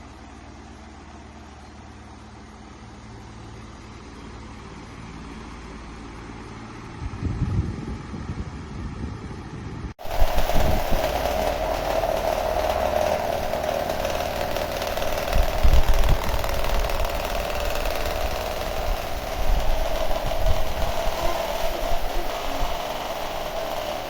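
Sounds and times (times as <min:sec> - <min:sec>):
pedestal fan whirring: 0:01.6 - 0:24.0
wind buffeting microphone: 0:07.0 - 0:24.0.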